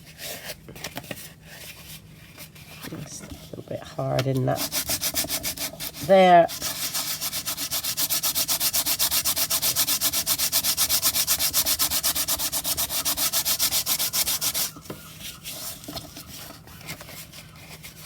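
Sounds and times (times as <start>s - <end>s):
hand sanding scraping strokes: 4.5s - 18.0s.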